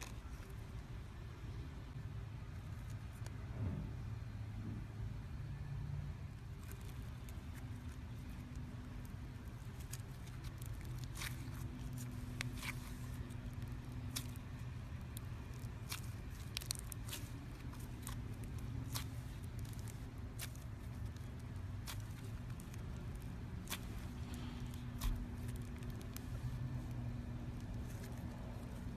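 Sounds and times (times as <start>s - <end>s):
steady low hum: 0.0s - 28.9s
slime clicking and popping: 6.6s - 28.7s.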